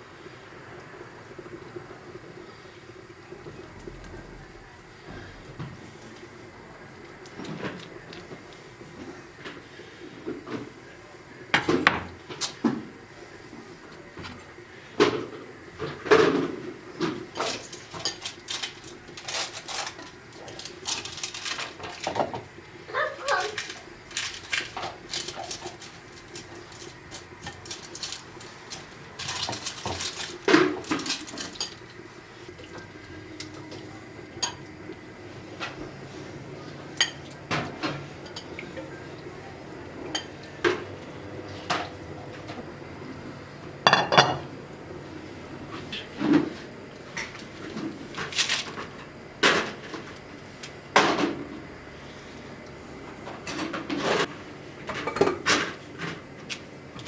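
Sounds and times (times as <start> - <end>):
crockery and utensils clinking: 32.7 - 34.7, 36.9 - 39.4.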